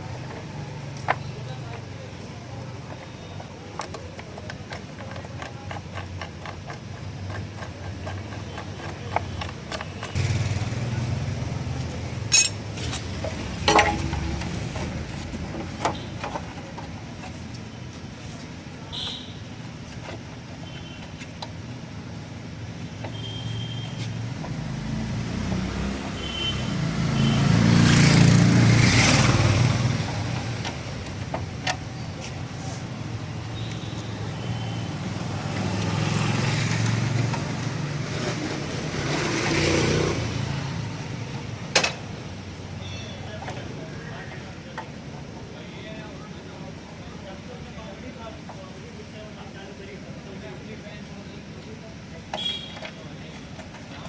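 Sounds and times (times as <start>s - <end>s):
motorcycle engine running: 0.0s - 16.1s
metallic clinks of tools and chain: 12.3s - 12.6s.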